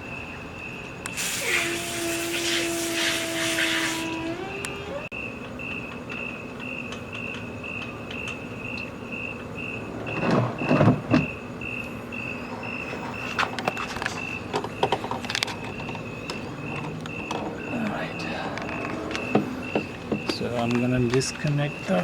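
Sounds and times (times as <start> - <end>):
steady high chirp: 10.6 - 22.0.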